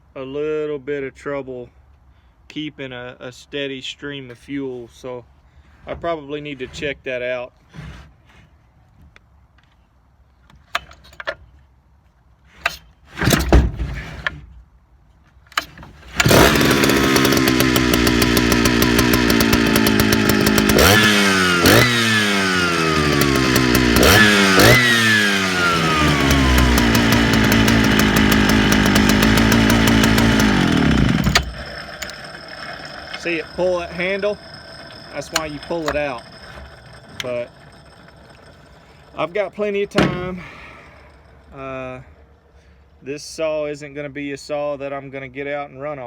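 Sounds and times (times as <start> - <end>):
chainsaw engine starting and revving: 15.6 - 42.1.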